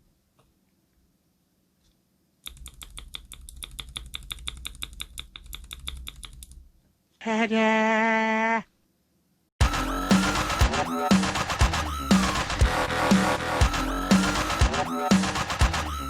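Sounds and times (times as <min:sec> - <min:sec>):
fast typing on mechanical keyboard: 0:02.5 - 0:06.6.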